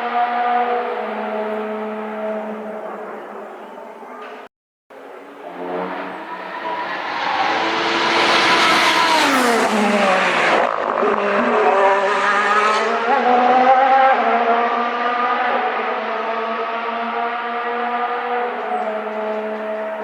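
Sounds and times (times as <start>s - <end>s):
racing car engine passing at speed: 0.0s - 20.0s.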